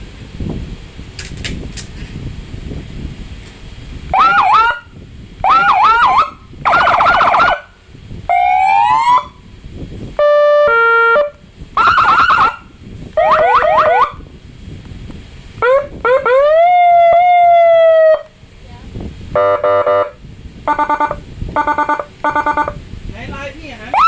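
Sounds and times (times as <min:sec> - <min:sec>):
electronic siren bursts: 0:04.1 - 0:09.5, 0:10.2 - 0:14.2, 0:15.6 - 0:18.3, 0:19.4 - 0:22.8.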